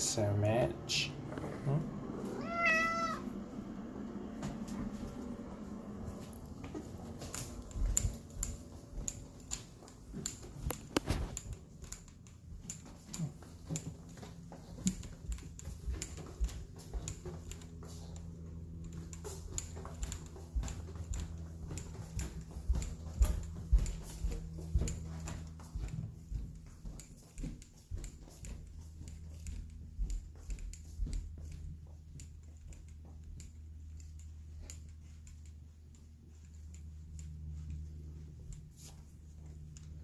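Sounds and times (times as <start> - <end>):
cat chewing and licking food: 1.4 - 40.0.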